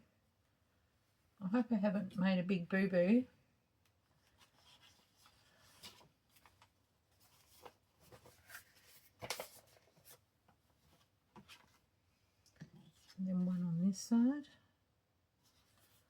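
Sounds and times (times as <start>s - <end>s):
paper rustling and tapping: 4.3s - 11.8s.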